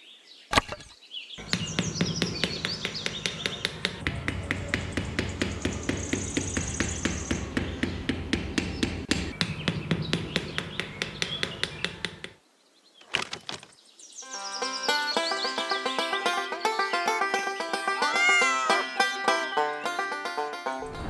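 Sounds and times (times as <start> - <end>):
birds chirping: 0.1 - 21.0
small hammer knocking: 1.4 - 12.4.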